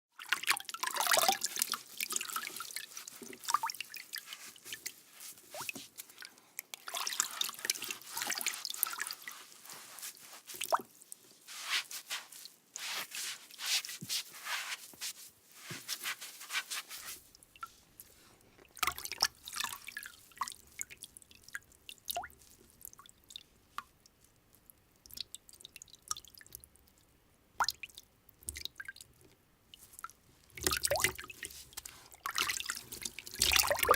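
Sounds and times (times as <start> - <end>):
water drips: 0.2 - 12.9, 17.3 - 17.7, 18.6 - 33.9
hands scrubbed with water: 0.2 - 17.4, 30.6 - 33.9.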